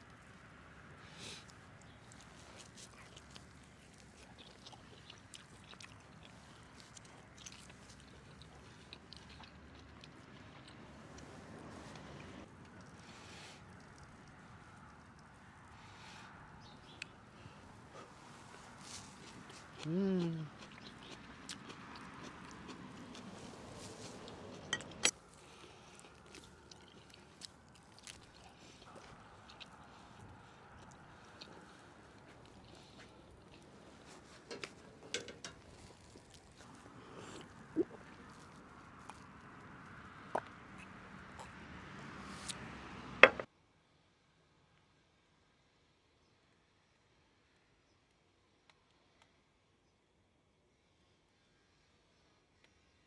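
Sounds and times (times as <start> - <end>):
person chewing crunchy food: 1.1 - 11.4, 17.9 - 42.6.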